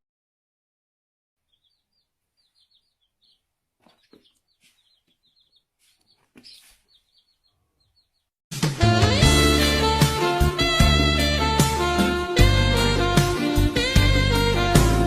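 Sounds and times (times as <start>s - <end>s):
small birds chirping: 1.4s - 8.4s
loud music: 8.5s - 15.0s.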